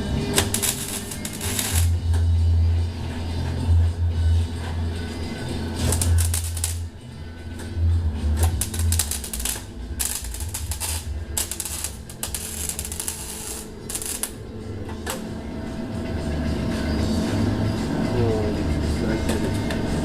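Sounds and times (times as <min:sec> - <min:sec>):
welder arc crackling and hissing: 0:00.0 - 0:02.2, 0:05.6 - 0:07.0, 0:08.3 - 0:14.4.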